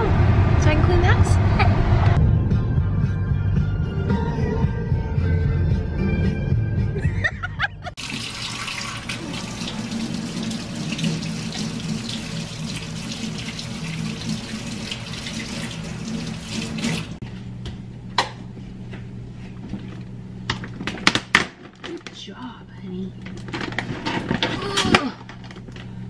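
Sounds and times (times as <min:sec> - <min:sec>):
tap water running into sink: 0:08.0 - 0:17.2.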